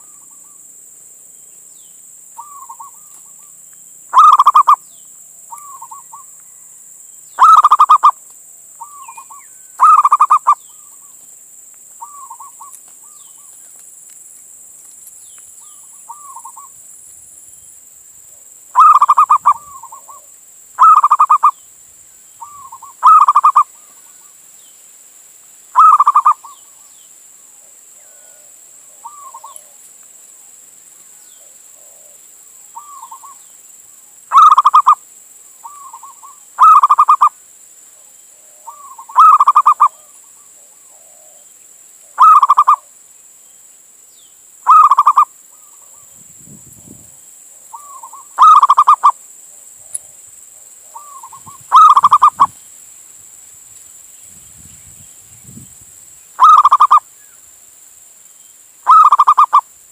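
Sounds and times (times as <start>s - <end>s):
dove cooing: 4.1s - 4.8s, 7.4s - 8.2s, 8.8s - 11.0s, 18.8s - 21.5s, 22.4s - 24.2s, 25.8s - 26.6s, 27.6s - 29.8s, 34.3s - 35.0s, 35.6s - 37.3s, 38.4s - 41.5s, 42.1s - 42.9s, 44.7s - 46.0s, 47.7s - 49.2s, 50.8s - 52.5s, 56.4s - 57.0s, 58.9s - 59.6s.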